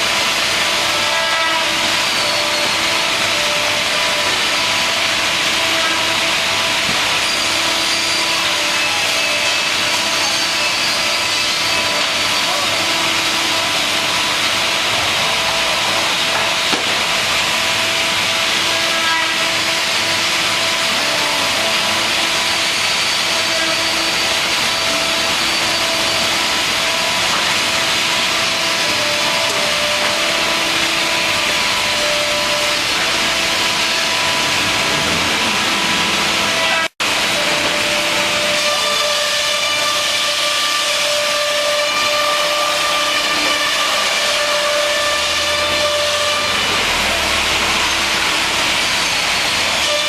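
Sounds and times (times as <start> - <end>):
machining center hissing: 0.0 - 39.3.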